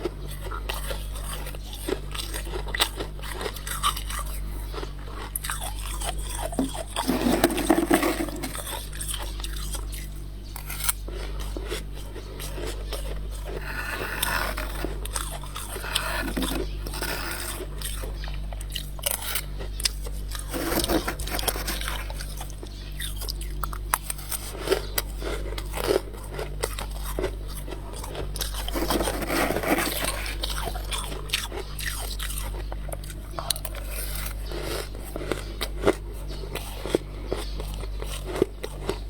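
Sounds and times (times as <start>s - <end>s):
chewing crunchy ice: 0.0s - 39.0s.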